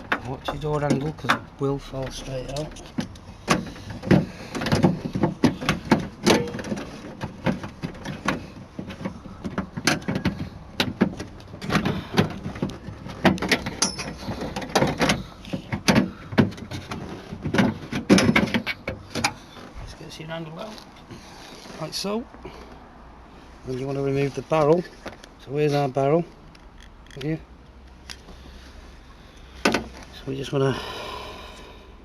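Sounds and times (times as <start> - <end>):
metallic latch clicks and rattles: 26.4 - 28.2.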